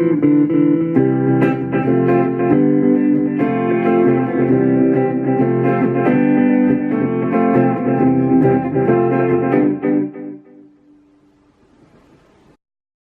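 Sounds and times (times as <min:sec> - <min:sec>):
clean electric guitar playing: 0:00.0 - 0:11.6.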